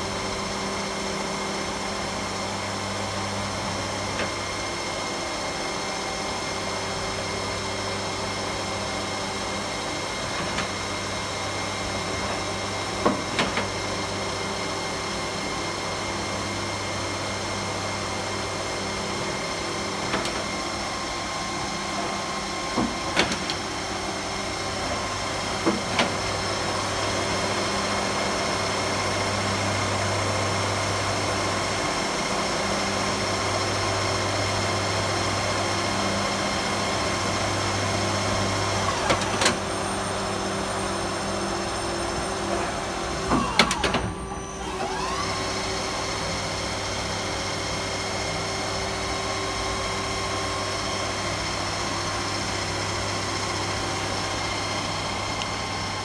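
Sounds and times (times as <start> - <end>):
lathe machine hum: 0.0 - 56.0
rising machine whine: 41.6 - 46.7.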